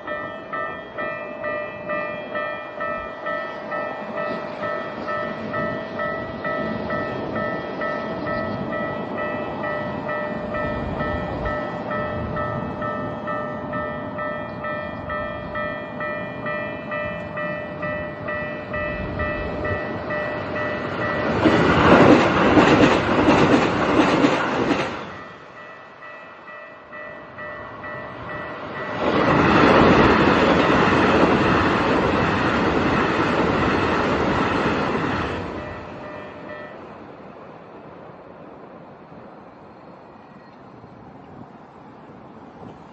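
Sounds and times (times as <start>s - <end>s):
level-crossing bell ringing: 0.0s - 21.5s, 25.1s - 30.2s, 35.6s - 36.9s
train passing loudly: 0.0s - 42.9s.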